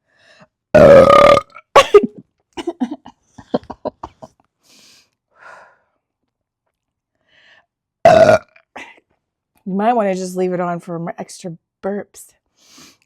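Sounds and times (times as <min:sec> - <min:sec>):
woman burping: 0:00.8 - 0:03.1, 0:08.1 - 0:08.9.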